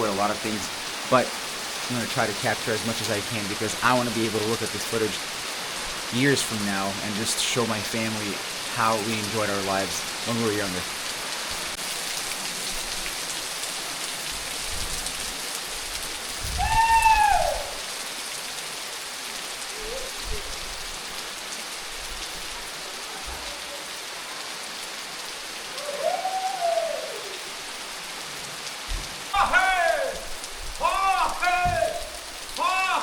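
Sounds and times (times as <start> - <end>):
heavy rain falling: 0.0 - 33.0
rising-and-falling call: 16.6 - 17.9, 25.7 - 27.7.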